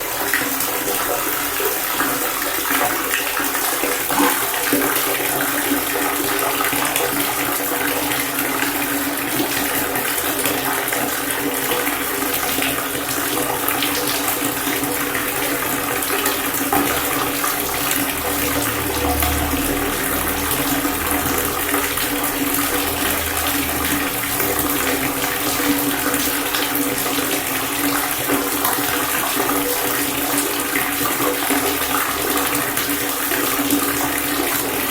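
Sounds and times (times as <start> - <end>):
water pouring and splashing: 0.0 - 34.9.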